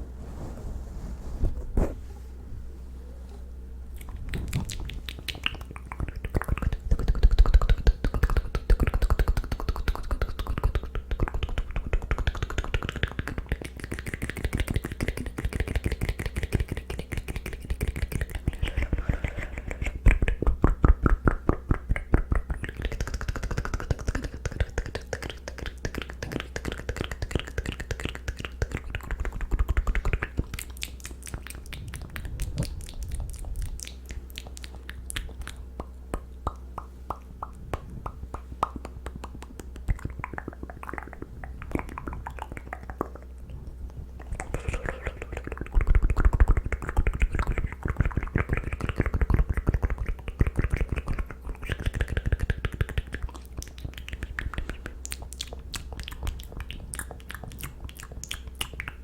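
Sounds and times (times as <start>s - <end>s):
low hum: 0.0s - 7.9s, 28.1s - 48.2s
tongue clicks and lip smacks: 4.0s - 59.0s.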